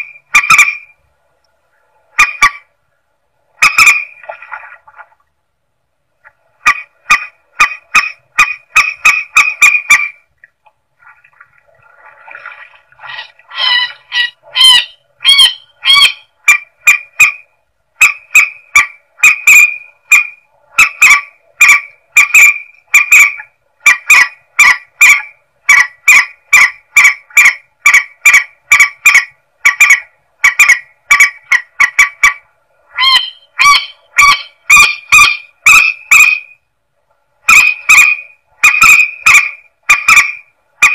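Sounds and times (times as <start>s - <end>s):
rail bird honking calls: 0.0s - 1.0s, 2.1s - 2.7s, 3.6s - 4.2s, 6.6s - 10.2s, 13.0s - 17.4s, 18.0s - 36.6s, 37.4s - 40.9s.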